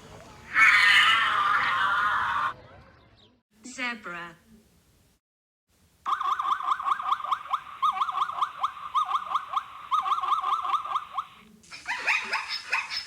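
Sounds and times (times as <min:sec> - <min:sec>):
zebra yelping barks: 0:06.7 - 0:13.0.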